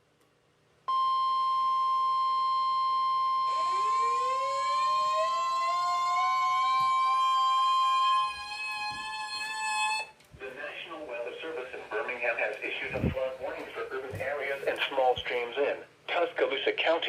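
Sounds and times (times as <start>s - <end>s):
high-pitched alarm tone: 0.9s - 10.2s
rising siren-like tone: 3.3s - 10.2s.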